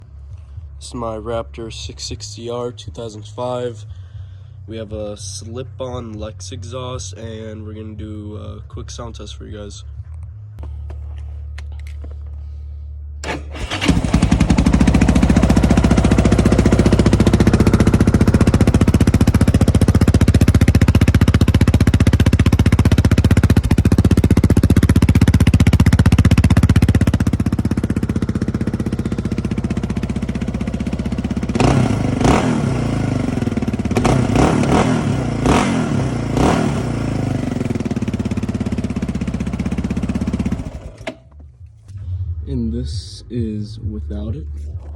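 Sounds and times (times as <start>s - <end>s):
atv engine revving: 13.2s - 41.3s.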